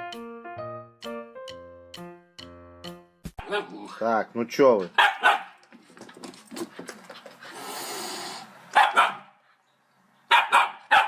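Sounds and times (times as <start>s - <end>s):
dog barking: 3.4s - 3.8s, 5.0s - 5.6s, 8.8s - 9.4s, 10.3s - 11.0s.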